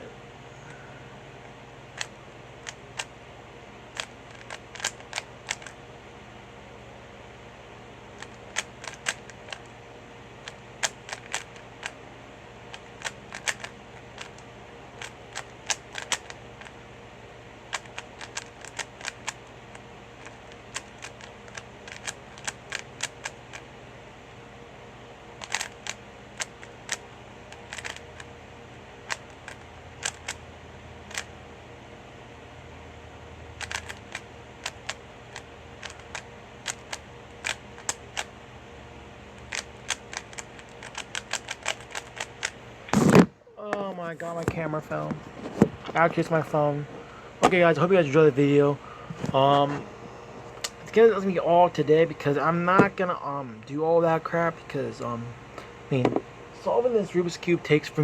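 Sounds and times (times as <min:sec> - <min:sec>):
faint hum: 0:00.0 - 0:58.0
puzzle cube clacking: 0:01.9 - 0:03.2, 0:03.9 - 0:05.8, 0:08.2 - 0:09.7, 0:10.4 - 0:12.0, 0:12.7 - 0:16.8, 0:17.7 - 0:23.7, 0:25.4 - 0:28.3, 0:29.0 - 0:30.4, 0:31.1 - 0:31.3, 0:33.6 - 0:38.3, 0:39.4 - 0:43.3.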